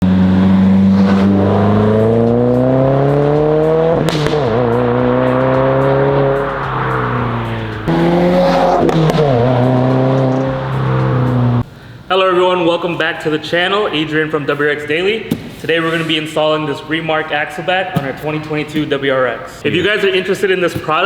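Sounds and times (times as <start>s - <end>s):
car exhaust under acceleration: 0.0s - 11.7s.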